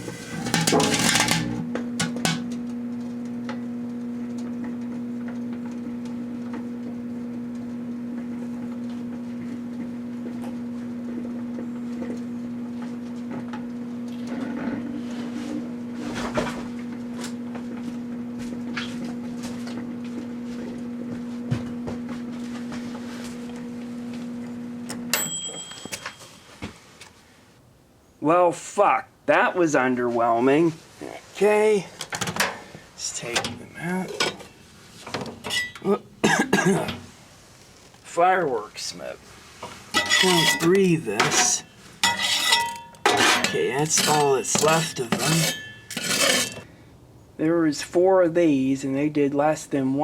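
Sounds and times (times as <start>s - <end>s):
microwave oven humming: 0.0s - 27.0s, 32.2s - 37.8s, 39.0s - 46.9s.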